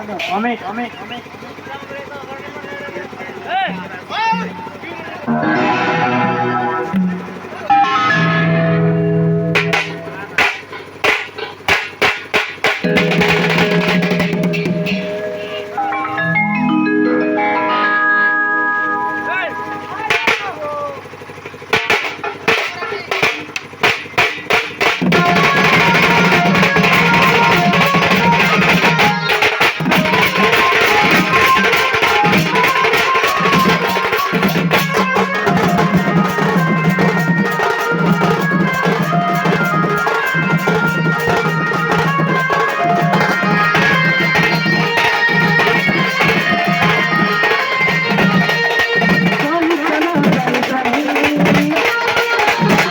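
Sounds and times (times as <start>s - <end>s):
loud drum strokes: 3.3s - 16.2s
live band playing instrumental: 3.4s - 52.9s.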